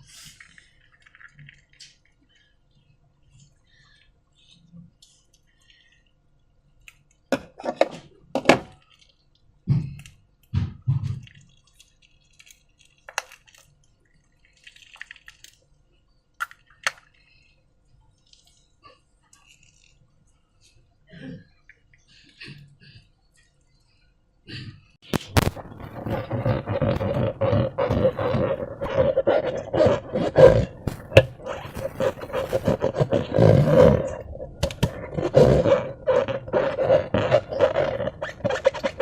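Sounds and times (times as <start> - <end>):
slime squelching and popping: 8.7 - 15.7, 25.0 - 39.0.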